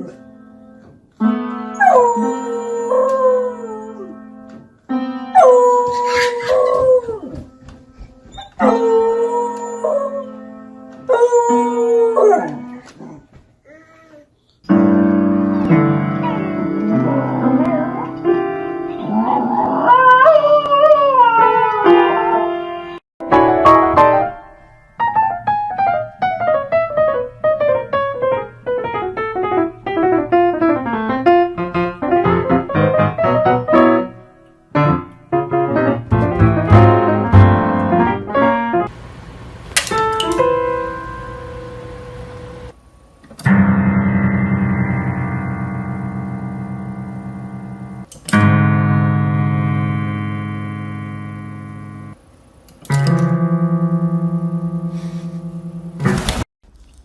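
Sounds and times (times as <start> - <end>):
piano music: 0.0 - 12.8, 14.7 - 42.8, 43.4 - 52.2, 52.9 - 56.4
dog howling: 1.8 - 4.1, 8.3 - 10.3, 11.1 - 13.2, 19.0 - 22.5
dog whimpering: 5.4 - 7.4, 8.2 - 8.8, 12.2 - 13.3.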